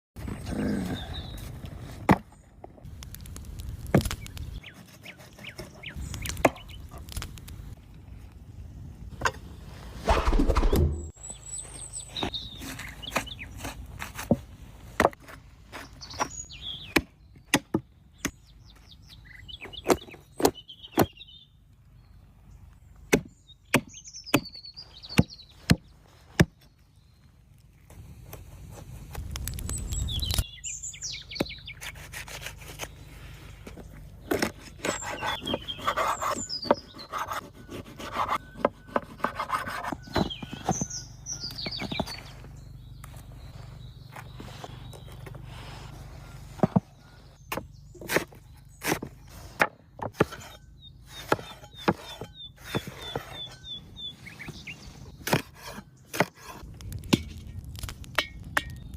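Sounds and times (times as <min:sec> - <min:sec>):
birds chirping: 0:00.2 - 0:02.8, 0:04.0 - 0:58.9
scraping and rubbing: 0:31.8 - 0:40.9.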